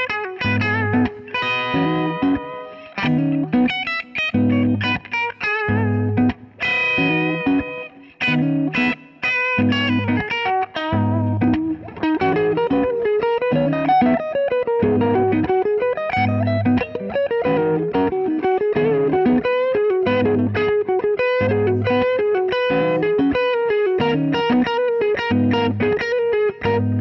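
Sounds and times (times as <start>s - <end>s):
electric guitar riff: 0.0s - 27.0s.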